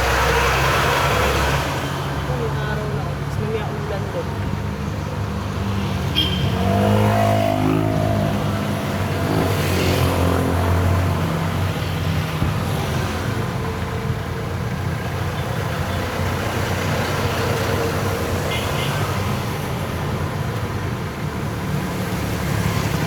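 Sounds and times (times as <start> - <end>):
road and tyre noise: 0.0 - 23.0.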